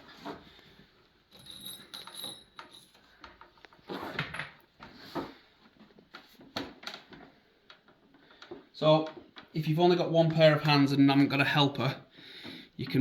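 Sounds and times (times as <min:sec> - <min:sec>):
wooden knocks and clatter: 0:04.4 - 0:09.6.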